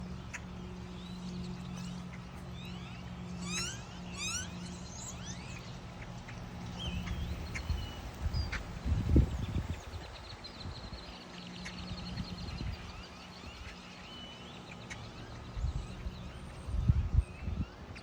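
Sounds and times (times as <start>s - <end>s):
small birds chirping: 0.0s - 18.0s
steady low hum: 0.0s - 18.0s.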